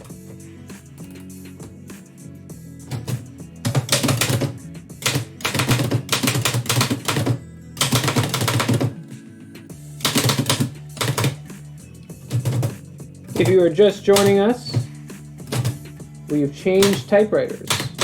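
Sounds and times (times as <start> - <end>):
background music: 0.0 - 18.0
typewriter keys typing: 2.9 - 9.0, 10.0 - 11.4, 12.3 - 14.9, 15.5 - 15.9, 16.5 - 18.0.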